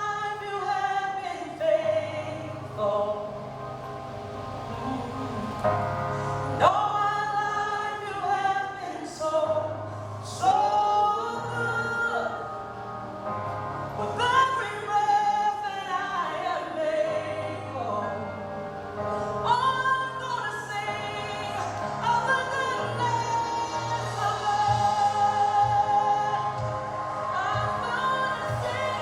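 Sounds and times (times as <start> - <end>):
choir singing long notes: 2.3 - 8.8, 10.4 - 29.0
band accompaniment: 22.8 - 29.0.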